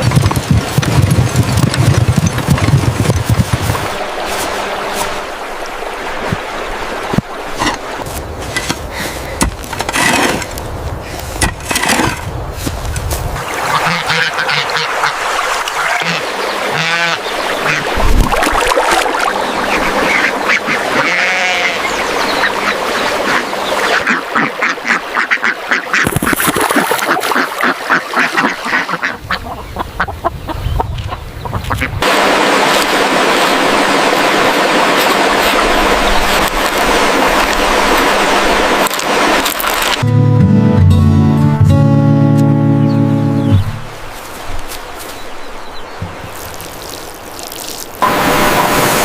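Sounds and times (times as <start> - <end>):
ducks quacking: 13.4 - 18.1, 19.2 - 32.0.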